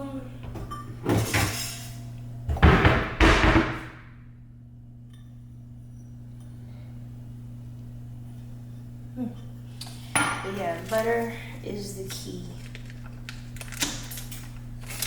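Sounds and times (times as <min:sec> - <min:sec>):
steady low hum: 0:00.0 - 0:15.0
cabinet doors banging shut: 0:02.5 - 0:04.1.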